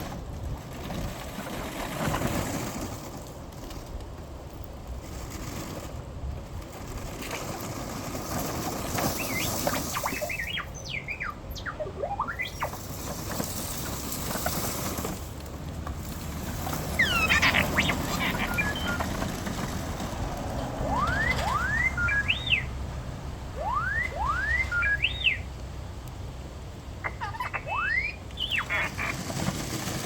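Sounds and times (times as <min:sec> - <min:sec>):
steady background noise: 0:00.0 - 0:30.0
robot electronic beeps and whistles: 0:09.0 - 0:12.9, 0:17.0 - 0:19.0, 0:20.9 - 0:22.8, 0:23.6 - 0:25.5, 0:27.0 - 0:29.1.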